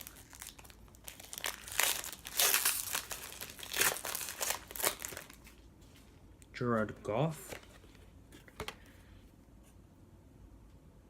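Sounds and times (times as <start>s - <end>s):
foil pack tearing and crinkling: 0.0s - 5.4s.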